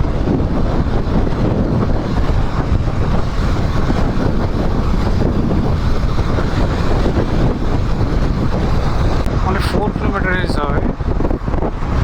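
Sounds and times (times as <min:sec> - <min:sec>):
motorcycle engine: 0:00.0 - 0:09.4
road noise: 0:00.0 - 0:12.0
wind buffeting microphone: 0:00.0 - 0:12.0.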